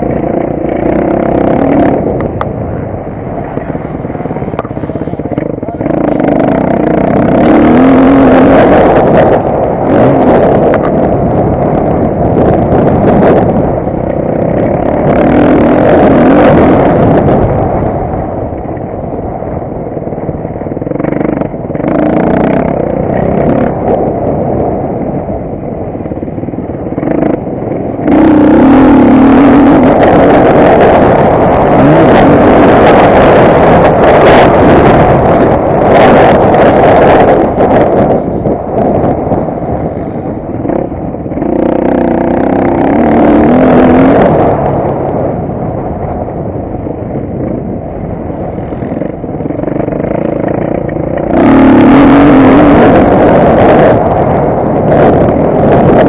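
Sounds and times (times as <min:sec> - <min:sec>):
motocross bike engine revving: 0:00.0 - 0:18.0, 0:20.7 - 0:24.9, 0:26.4 - 0:45.5, 0:48.5 - 0:56.0.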